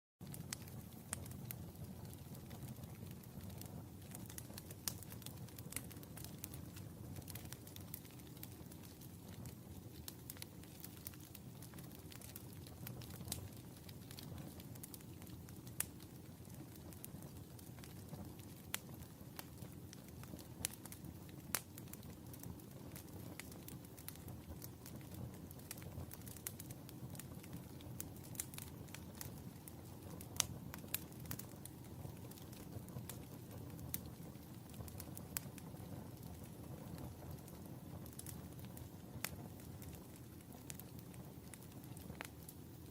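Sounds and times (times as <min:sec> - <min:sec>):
flames rumbling: 0:00.2 - 0:42.9
wood fire crackling: 0:00.2 - 0:42.9.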